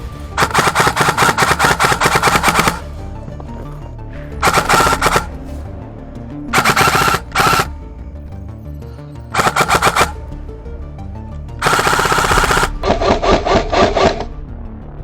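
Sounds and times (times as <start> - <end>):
background music: 0.0 - 15.0
airsoft gun bursts: 0.4 - 2.9, 4.4 - 5.4, 6.5 - 7.7, 9.3 - 10.2, 11.6 - 14.2.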